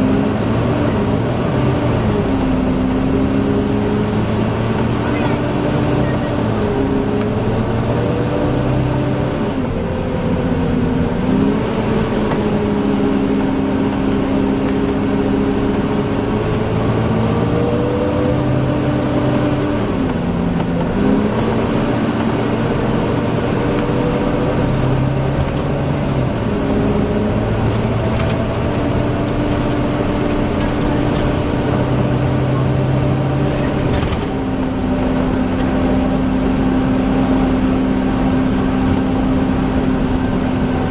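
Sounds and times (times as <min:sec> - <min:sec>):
bus whine and engine: 0:00.0 - 0:40.9.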